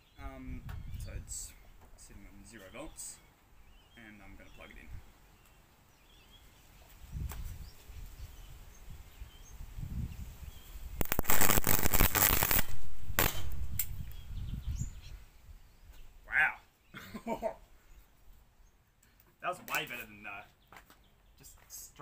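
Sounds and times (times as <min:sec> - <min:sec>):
components crackling and popping: 0:11.0 - 0:14.2
electrical cracks: 0:11.0 - 0:14.2.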